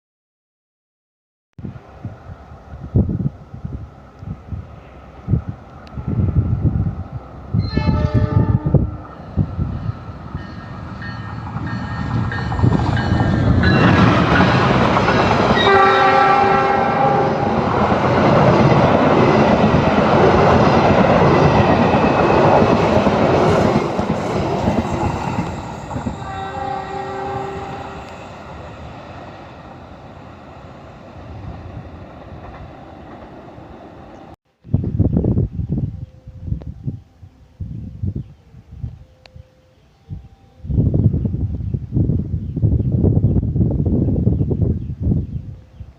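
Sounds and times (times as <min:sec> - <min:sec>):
train rumble and wheel clatter: 0:01.6 - 0:34.4, 0:40.0 - 0:45.9
train horn: 0:07.6 - 0:09.1, 0:15.5 - 0:17.6, 0:25.5 - 0:28.5.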